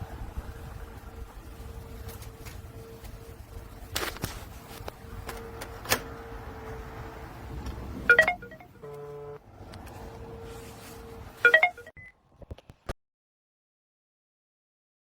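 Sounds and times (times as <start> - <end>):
electronic door lock chimes: 8.0 - 9.4, 11.4 - 12.2
buzzy beep: 8.1 - 9.4, 11.4 - 12.1.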